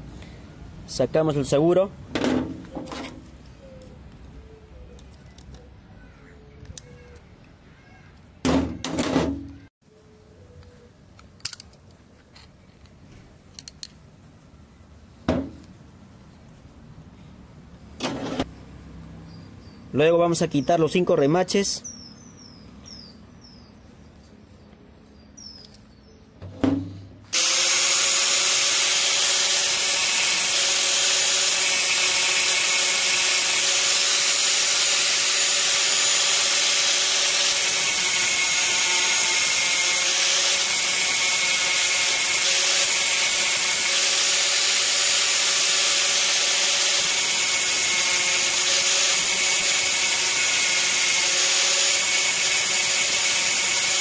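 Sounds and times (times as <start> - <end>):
power tool grinding with whine: 27.3 - 54.0.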